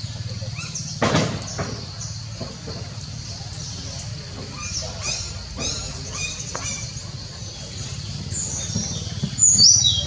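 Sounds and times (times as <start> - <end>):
whistled calls: 3.5 - 10.0.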